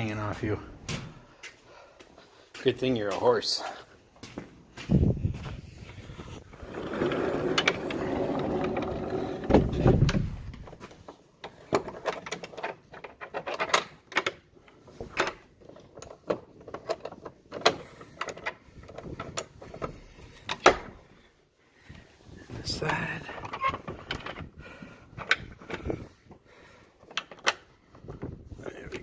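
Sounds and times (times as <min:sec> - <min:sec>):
barn door rolling on track: 0:06.5 - 0:10.8
metal latch clicks: 0:11.7 - 0:14.4.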